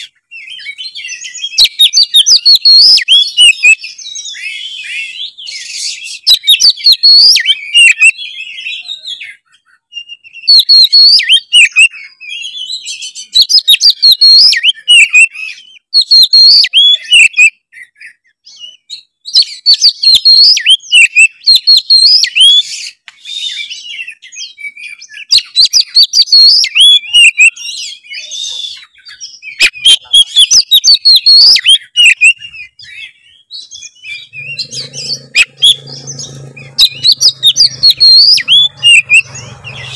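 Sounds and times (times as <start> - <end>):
songbird whistling song: 0.0 - 39.9.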